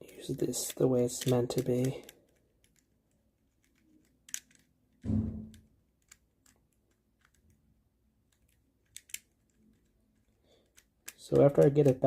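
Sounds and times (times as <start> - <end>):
metal tool clicking and scratching: 0.0 - 4.7, 6.0 - 7.6, 8.3 - 12.0
dull thump: 5.0 - 5.6.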